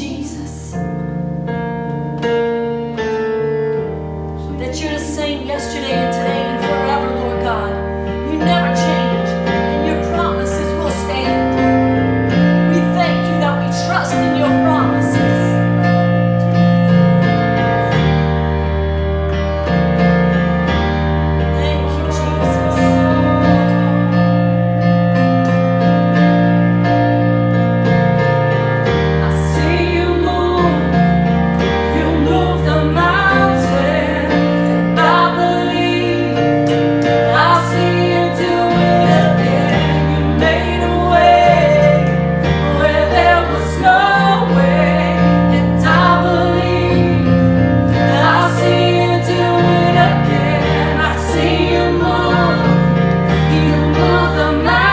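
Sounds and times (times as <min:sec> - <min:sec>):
bass line: 0:00.0 - 0:54.9
keyboard chords: 0:00.0 - 0:54.9
person singing: 0:21.5 - 0:24.5.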